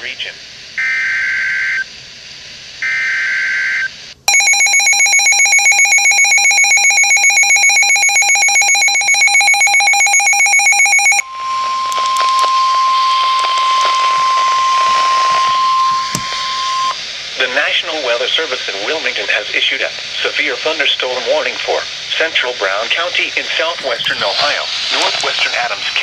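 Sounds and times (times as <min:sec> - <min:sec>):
steady single-pitch alert tone: 0:04.3 - 0:17.0
two-tone attention signal: 0:04.3 - 0:17.0
screeching data bursts: 0:07.1 - 0:17.0.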